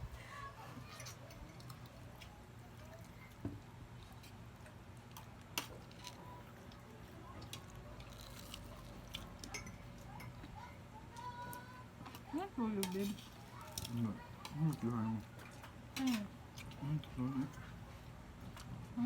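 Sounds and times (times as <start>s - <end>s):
low steady hum: 0.0s - 19.0s
dishes and utensils clinking: 9.4s - 10.4s.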